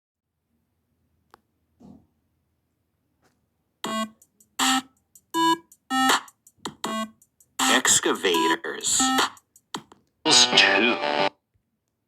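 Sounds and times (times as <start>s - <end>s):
synthesizer jingle: 3.9s - 4.8s, 6.8s - 9.4s.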